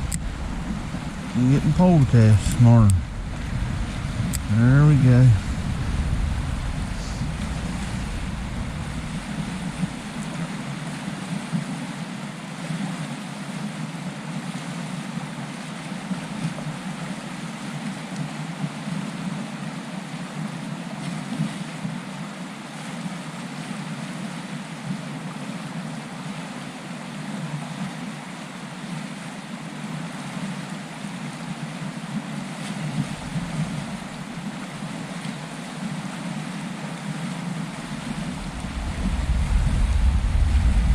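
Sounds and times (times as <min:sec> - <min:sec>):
low rumble: 0:00.0 - 0:10.4, 0:37.7 - 0:40.9
stream flowing: 0:00.0 - 0:40.9.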